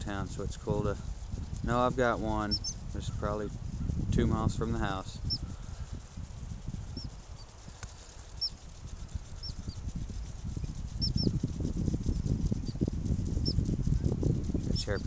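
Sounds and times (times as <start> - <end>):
wind rumble on microphone: 0.0 - 15.0
prairie dogs chirping: 1.7 - 2.9, 5.2 - 6.0, 6.8 - 10.0, 10.6 - 11.4.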